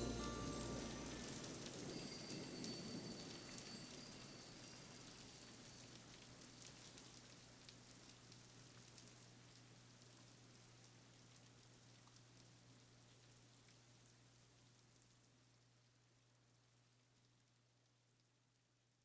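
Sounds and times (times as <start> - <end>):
ringing music notes: 0.0 - 4.6
rain patter: 0.0 - 19.0.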